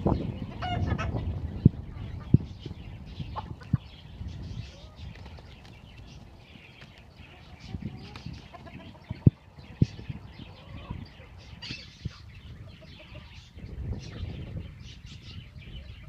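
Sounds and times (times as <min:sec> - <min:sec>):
hens clucking: 0:00.4 - 0:01.4, 0:03.2 - 0:04.0, 0:06.1 - 0:13.5
roosters fighting: 0:03.2 - 0:13.5
wings flapping: 0:05.0 - 0:07.3, 0:07.9 - 0:08.8.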